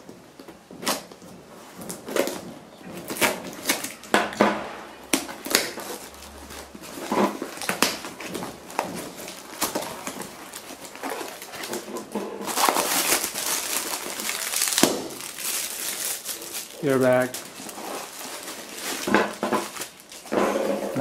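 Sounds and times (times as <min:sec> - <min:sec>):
plastic packing crinkling: 0:00.0 - 0:04.4, 0:05.0 - 0:21.0.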